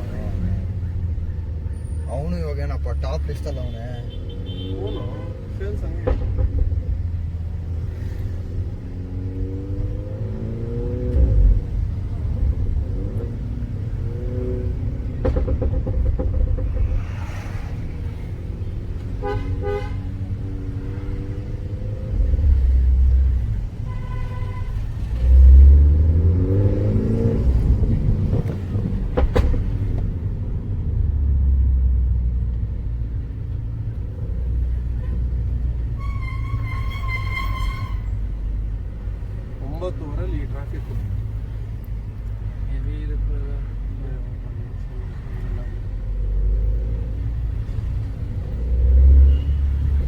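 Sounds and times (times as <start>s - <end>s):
vehicle horns honking: 3.4s - 5.4s, 19.0s - 20.3s, 23.8s - 25.0s, 36.0s - 38.3s, 49.2s - 50.0s
car engine revving: 24.8s - 30.1s.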